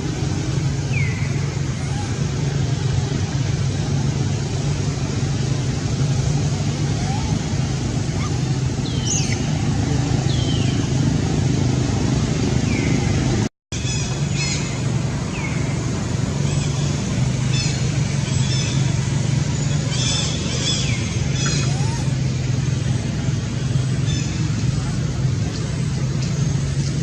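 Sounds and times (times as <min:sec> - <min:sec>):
low motor hum: 0:00.0 - 0:27.0
high falling chirps: 0:06.9 - 0:11.0.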